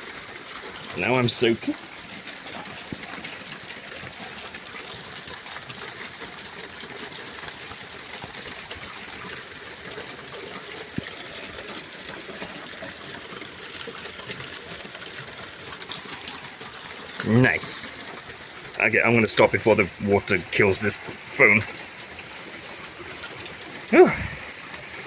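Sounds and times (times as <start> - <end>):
heavy rain falling: 0.0 - 25.0
raindrops ticking on microphone: 0.0 - 25.0.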